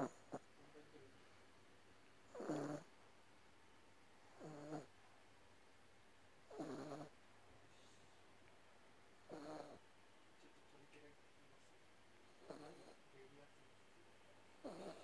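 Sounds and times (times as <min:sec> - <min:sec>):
dog snoring: 0:00.0 - 0:00.5, 0:02.3 - 0:02.9, 0:04.3 - 0:04.9, 0:06.5 - 0:07.1, 0:09.3 - 0:09.8, 0:12.4 - 0:13.0, 0:14.6 - 0:15.0.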